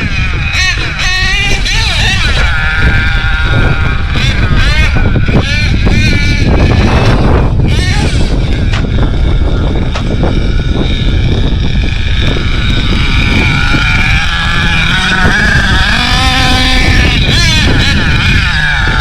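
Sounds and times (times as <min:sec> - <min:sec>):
rc truck engine whining: 0:00.0 - 0:19.0
wind rumble on microphone: 0:00.0 - 0:19.0.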